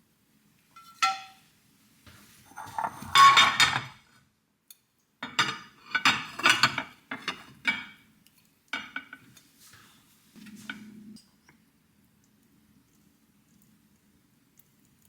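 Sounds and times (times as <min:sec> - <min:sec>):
dishes and cutlery clinking: 0:00.8 - 0:01.4, 0:02.5 - 0:04.0, 0:05.2 - 0:08.0, 0:08.8 - 0:09.8.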